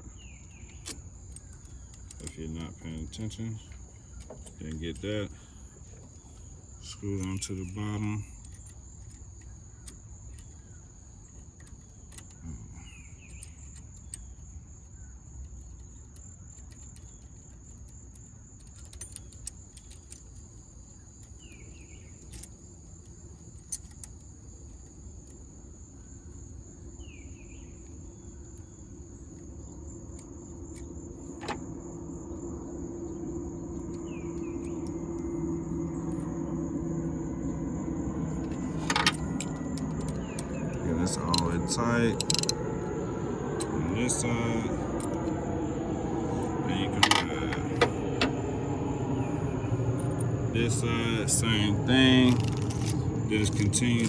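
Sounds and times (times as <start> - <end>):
small metallic clicks: 0.0 - 26.4, 27.8 - 31.8, 38.2 - 42.8, 51.3 - 54.0
high-pitched insect drone: 25.9 - 54.0
low hum: 26.0 - 54.0.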